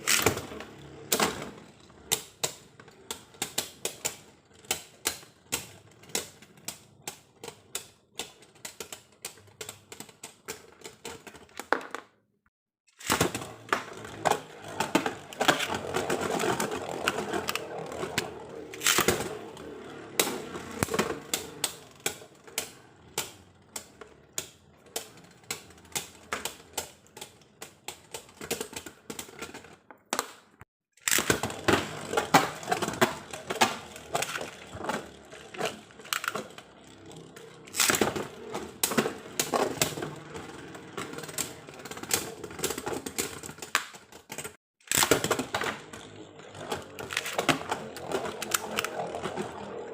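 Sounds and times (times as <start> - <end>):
plastic spinning tops clicking: 13.0 - 29.6, 31.0 - 49.9.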